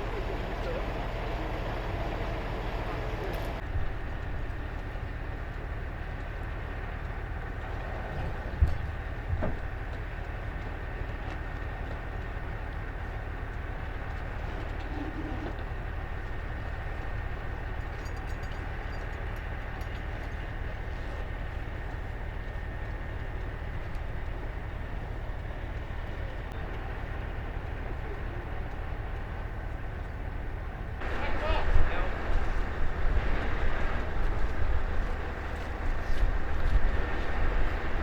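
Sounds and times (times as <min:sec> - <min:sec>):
boat engine droning: 0:00.0 - 0:38.0
faint steady whine: 0:20.9 - 0:38.0.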